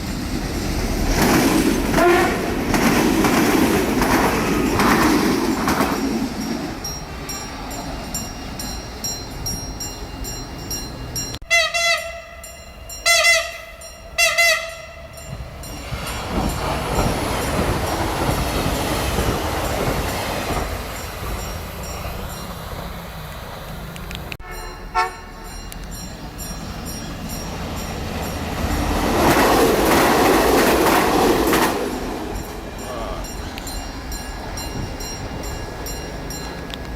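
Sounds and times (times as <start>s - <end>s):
train rail rumble: 0.0s - 36.9s
train horn blasts: 1.9s - 2.6s, 11.4s - 15.2s, 24.4s - 25.7s.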